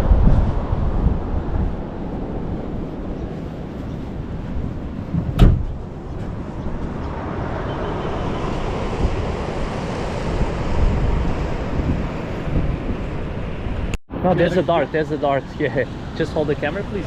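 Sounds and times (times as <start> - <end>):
wind buffeting microphone: 0.0 - 14.0
surf washing: 7.2 - 17.0.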